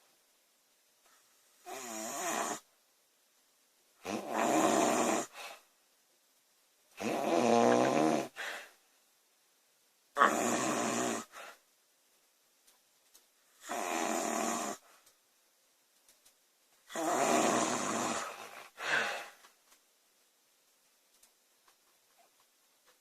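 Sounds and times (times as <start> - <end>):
woman snoring loudly: 1.6 - 2.6, 4.0 - 5.4, 7.0 - 8.4, 10.2 - 11.3, 13.6 - 14.8, 16.9 - 18.7.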